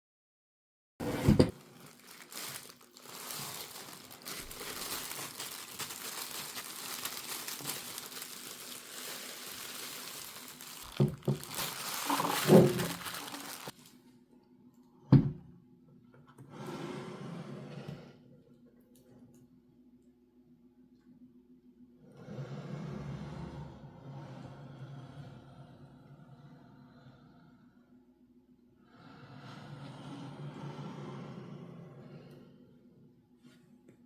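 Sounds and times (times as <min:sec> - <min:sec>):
packaging rustling and crinkling: 0:01.5 - 0:14.0.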